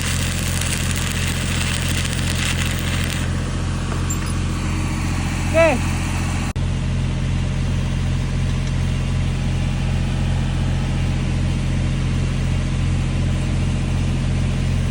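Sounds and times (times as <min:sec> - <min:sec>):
welding arc crackling hiss: 0:00.0 - 0:06.5
welding machine mains hum: 0:00.0 - 0:06.5.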